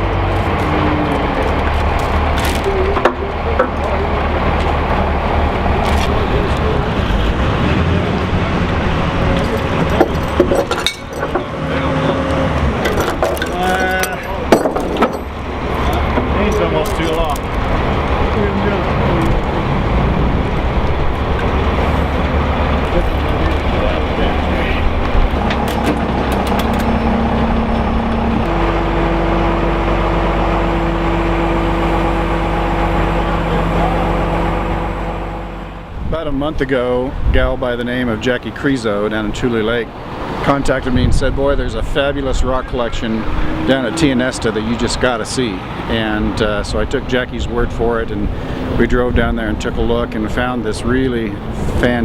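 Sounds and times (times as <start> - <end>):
heavy machinery engine running: 0.0 - 52.0
metallic clinks and knocks: 9.4 - 11.5, 12.8 - 15.4.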